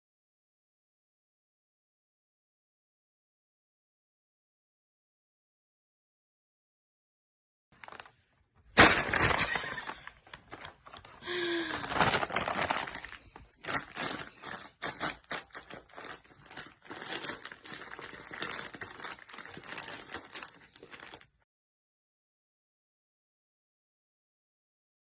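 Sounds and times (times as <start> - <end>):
rustling and crinkling: 7.8 - 21.4.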